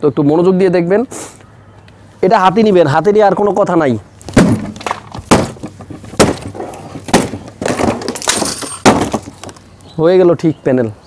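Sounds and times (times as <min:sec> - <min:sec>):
glass cracking and tinkling: 0:08.0 - 0:09.5.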